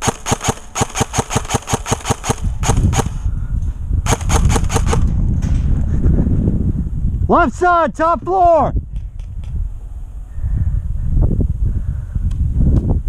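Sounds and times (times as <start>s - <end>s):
airsoft gun firing full-auto: 0.0s - 3.2s, 4.1s - 5.1s
low microphone rumble: 2.1s - 7.5s, 8.7s - 13.0s.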